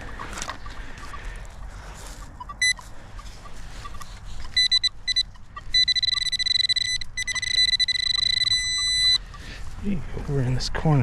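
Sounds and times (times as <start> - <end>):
metal detector beeping: 2.1 - 9.5.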